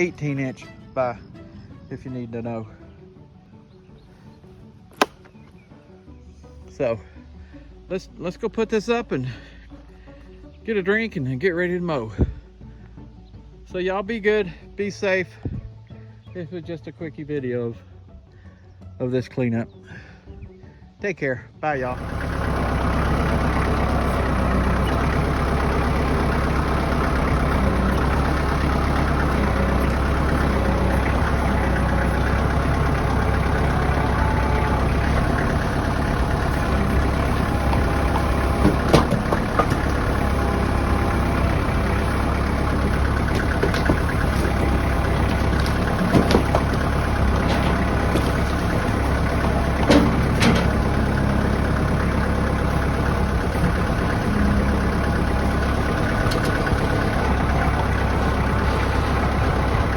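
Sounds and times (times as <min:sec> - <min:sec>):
vehicle engine running: 0:04.2 - 0:05.6, 0:21.8 - 0:59.9
sharp clicks or knocks: 0:05.0 - 0:05.4.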